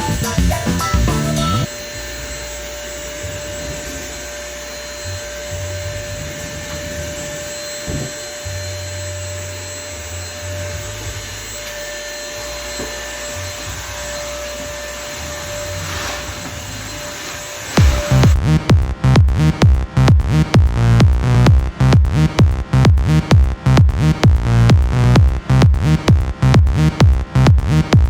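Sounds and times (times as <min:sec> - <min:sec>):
vacuum cleaner running: 0:00.0 - 0:18.4.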